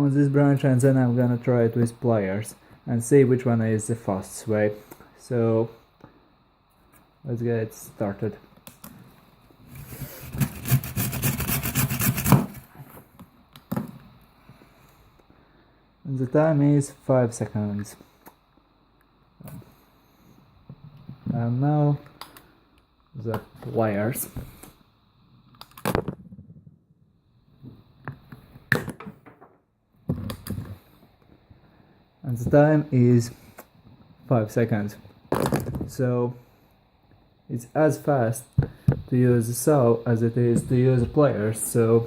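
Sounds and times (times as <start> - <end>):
hand saw cutting branch: 9.7 - 12.6.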